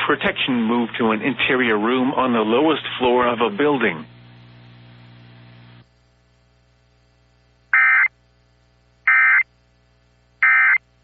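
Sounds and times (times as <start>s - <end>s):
faint steady hum: 0.0s - 11.0s
buzzy digital data bursts: 7.7s - 8.1s.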